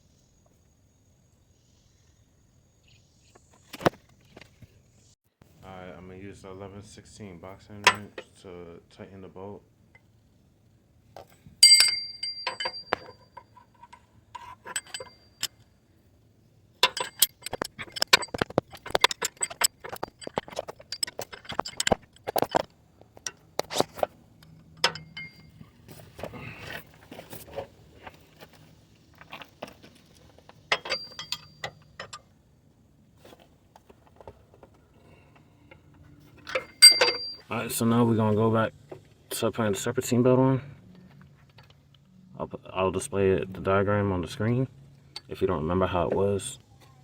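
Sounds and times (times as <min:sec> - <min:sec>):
wrench clinking on metal bolt: 0:07.8 - 0:08.2, 0:11.6 - 0:15.6, 0:16.8 - 0:25.7, 0:30.7 - 0:32.3, 0:36.4 - 0:37.5.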